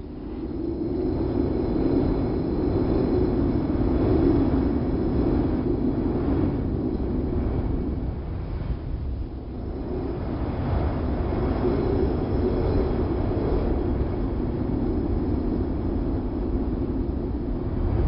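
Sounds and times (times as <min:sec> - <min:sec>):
rushing wind: 0:00.0 - 0:18.0.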